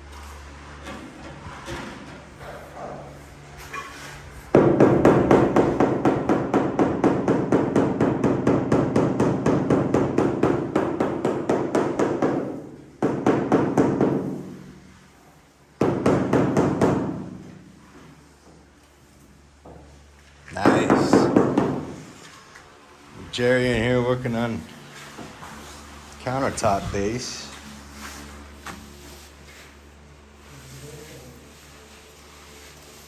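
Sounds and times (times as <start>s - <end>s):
rapid hammering: 4.5s - 14.4s, 15.8s - 17.3s, 20.6s - 22.0s.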